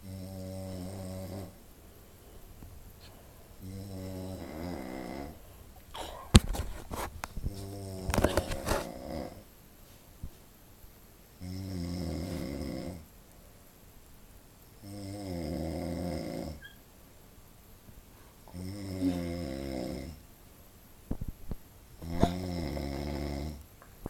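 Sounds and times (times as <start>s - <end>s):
person snoring: 0.0s - 1.6s, 3.6s - 5.4s, 11.4s - 13.0s, 14.8s - 16.6s, 18.5s - 20.2s, 22.0s - 23.6s.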